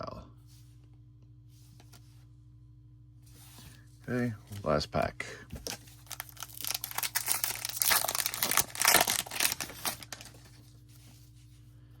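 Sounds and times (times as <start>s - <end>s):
card pack wrapper tearing and crinkling: 5.6s - 10.7s.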